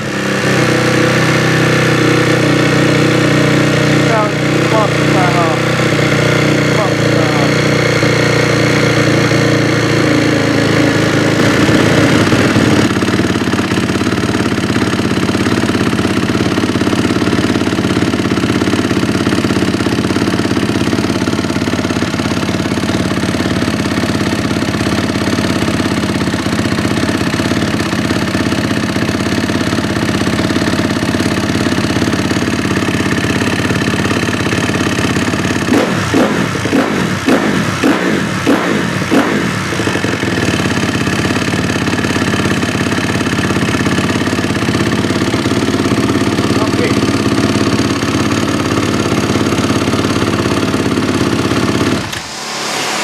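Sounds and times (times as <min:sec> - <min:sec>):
engine revving blips: 0:00.0 - 0:13.0, 0:35.6 - 0:40.8, 0:51.8 - 0:53.0
motorcycle engine fast idle: 0:00.0 - 0:53.0.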